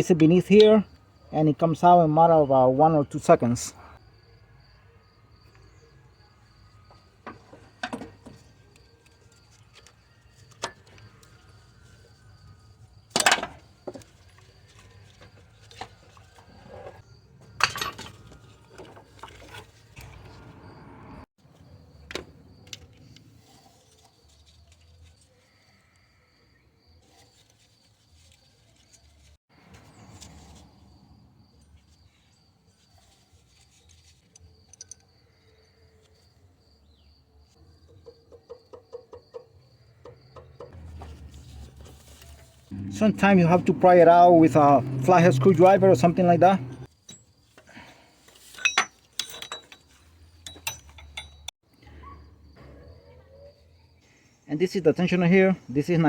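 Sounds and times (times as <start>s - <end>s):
metallic clinks of hand tools: 48.5s - 51.5s.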